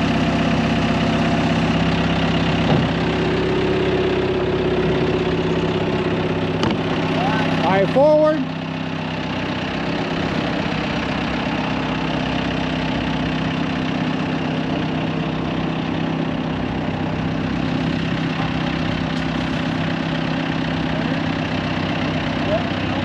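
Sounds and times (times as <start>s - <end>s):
heavy equipment engine running: 0.0s - 23.0s.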